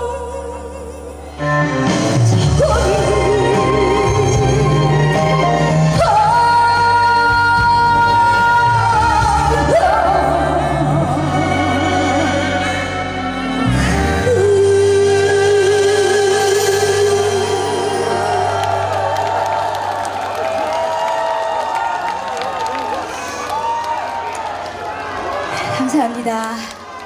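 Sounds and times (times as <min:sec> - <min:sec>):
band accompaniment: 0:01.3 - 0:21.1.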